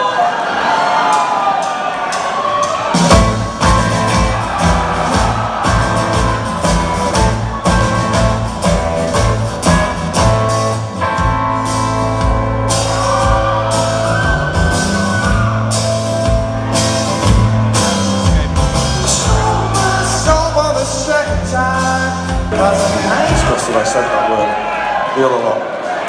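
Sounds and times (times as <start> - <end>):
drums: 0.6 - 26.0
bass guitar: 3.0 - 23.8
man singing: 18.7 - 23.8.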